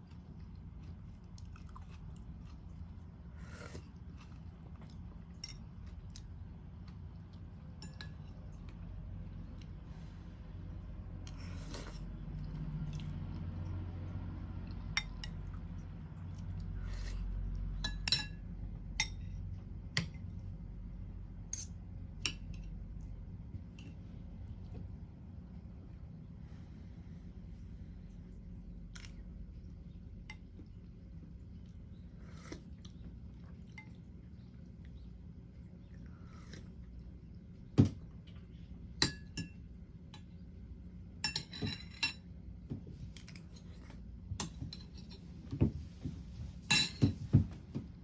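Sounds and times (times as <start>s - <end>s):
low steady hum: 0.0s - 48.0s
cutlery and dishes clinking: 46.7s - 47.5s.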